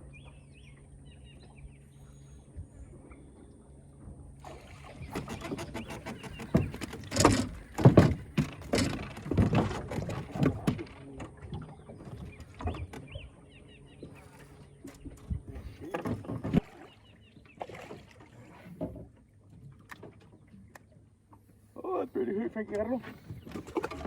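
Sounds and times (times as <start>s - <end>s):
water splashing: 4.4s - 12.8s, 15.6s - 21.0s, 22.5s - 24.0s.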